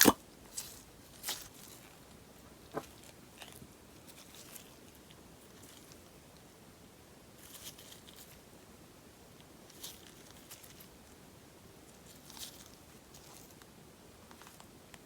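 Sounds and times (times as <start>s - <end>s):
clay slime crackling by hand: 0.0s - 6.4s.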